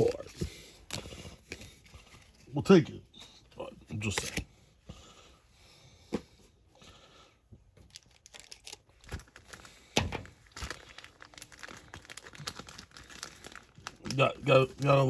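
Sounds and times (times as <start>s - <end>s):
cards being handled: 4.0s - 4.4s
foil wrapper crinkling: 7.8s - 15.0s.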